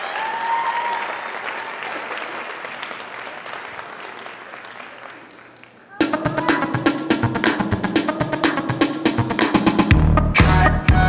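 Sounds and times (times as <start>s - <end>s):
audience applauding: 0.0s - 6.0s.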